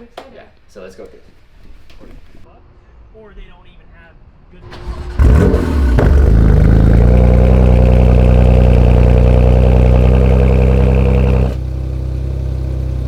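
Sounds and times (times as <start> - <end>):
car engine idling: 4.6 - 13.0.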